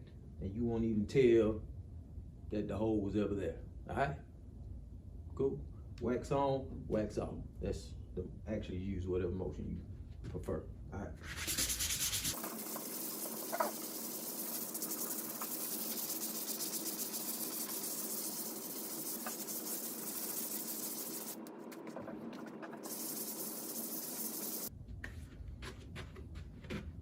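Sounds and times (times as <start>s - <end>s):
hand sanding drywall: 11.2s - 24.7s.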